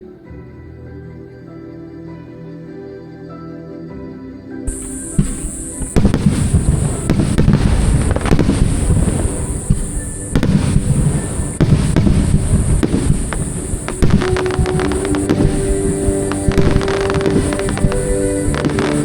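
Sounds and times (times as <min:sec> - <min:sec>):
music: 0:00.0 - 0:19.0
fireworks exploding: 0:04.7 - 0:19.0.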